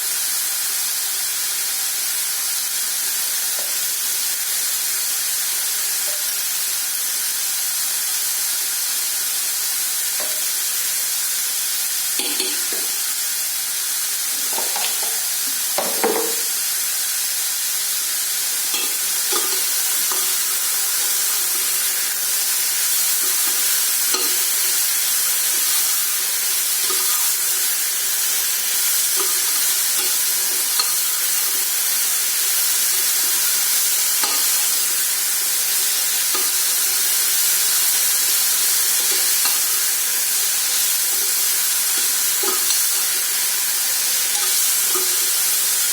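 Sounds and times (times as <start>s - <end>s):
bread frying in oil: 0.0s - 45.9s.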